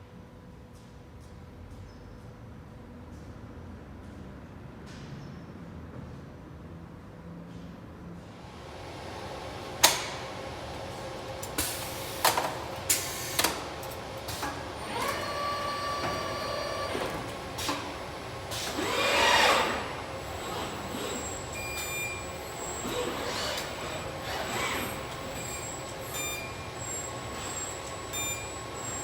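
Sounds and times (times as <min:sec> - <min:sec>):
machinery humming: 0:08.4 - 0:29.0.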